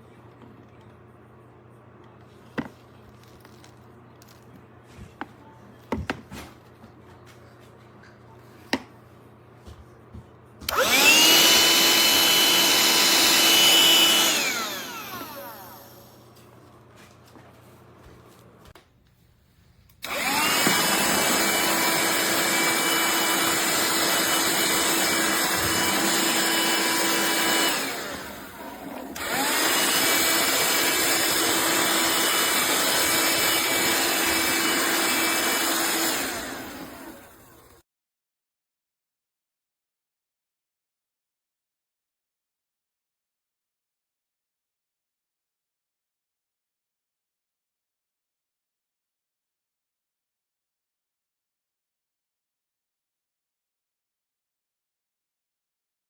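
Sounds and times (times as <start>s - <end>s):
handheld vacuum motor whining: 10.7s - 16.2s, 20.0s - 37.8s.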